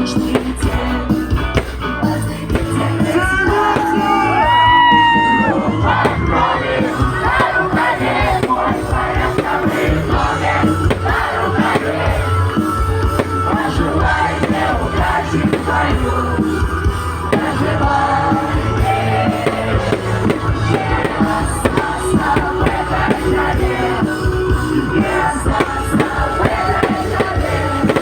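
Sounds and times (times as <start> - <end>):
crowd voices: 0.0 - 28.0
live pop music: 0.0 - 28.0.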